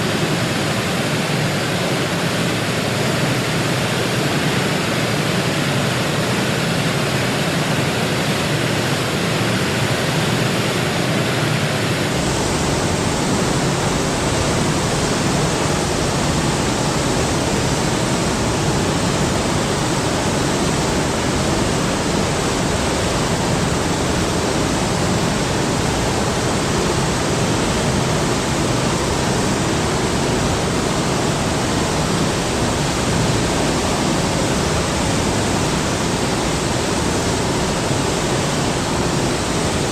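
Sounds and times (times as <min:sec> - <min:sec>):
waterfall rushing: 0:12.0 - 0:39.9.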